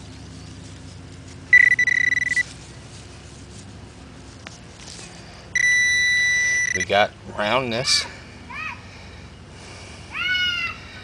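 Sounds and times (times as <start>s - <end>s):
electronic alert tone: 1.5s - 2.4s, 5.6s - 6.9s.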